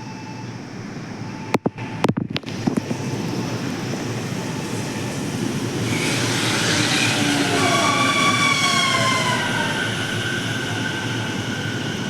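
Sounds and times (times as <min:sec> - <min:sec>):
high whine of braking train: 0:00.0 - 0:12.0
electric train running: 0:03.3 - 0:12.0.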